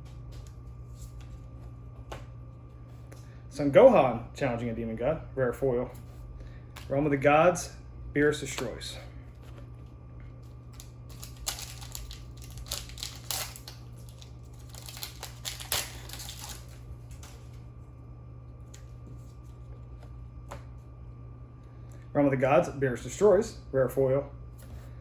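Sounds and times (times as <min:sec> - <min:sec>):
cards being handled: 0:08.4 - 0:17.6
foil wrapper crinkling and tearing: 0:10.5 - 0:17.5.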